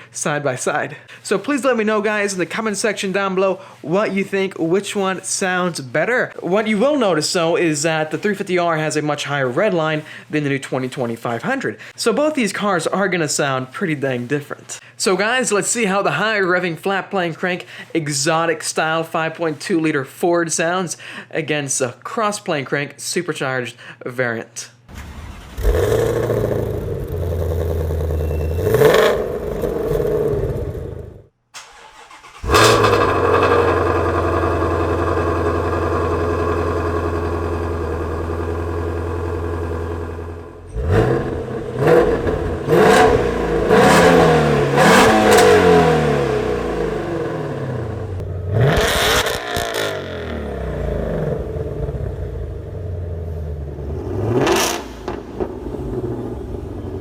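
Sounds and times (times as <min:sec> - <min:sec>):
car engine revving: 0:25.0 - 0:57.0.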